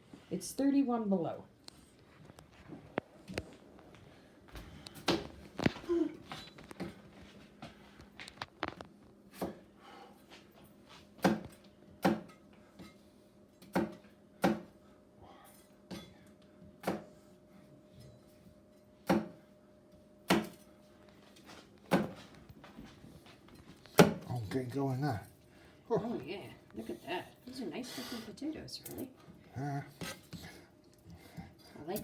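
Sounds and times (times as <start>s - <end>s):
knife chopping on cutting board: 11.2s - 12.4s, 13.6s - 14.7s, 16.8s - 17.1s.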